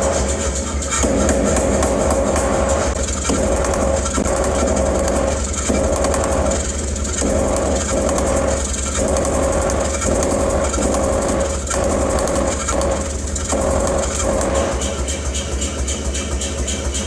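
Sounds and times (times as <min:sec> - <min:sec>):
machinery low hum: 0:00.0 - 0:17.0
mid-pitched machine tone: 0:00.0 - 0:17.0.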